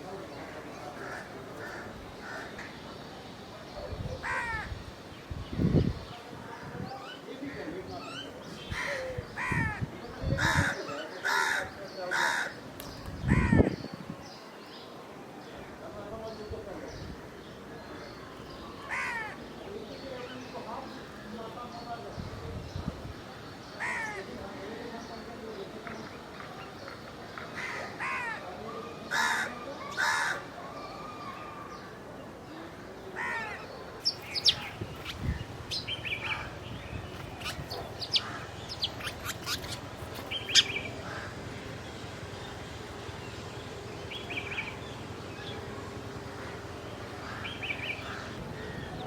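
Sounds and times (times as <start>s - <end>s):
crow cawing: 1.0s - 2.7s, 4.2s - 4.7s, 8.7s - 9.8s, 10.4s - 12.6s, 13.3s - 13.7s, 18.8s - 19.4s, 27.6s - 28.4s, 29.1s - 30.5s, 33.2s - 33.6s, 38.1s - 39.8s, 40.5s - 41.4s, 47.2s - 48.4s
small birds chirping: 31.2s - 49.0s
bird trill: 33.4s - 41.4s.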